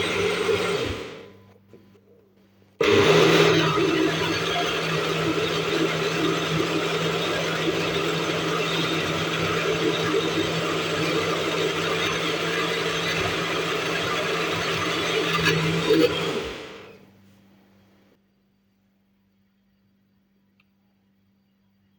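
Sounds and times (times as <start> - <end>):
electric blender running: 0.0 - 1.4, 2.8 - 17.0.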